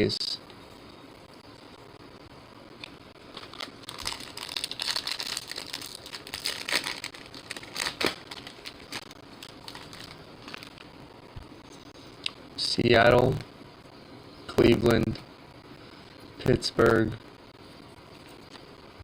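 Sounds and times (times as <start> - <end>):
clicks and crackles: 2.8 - 11.5
cards being handled: 3.3 - 10.9
foil wrapper crinkling: 3.3 - 10.9.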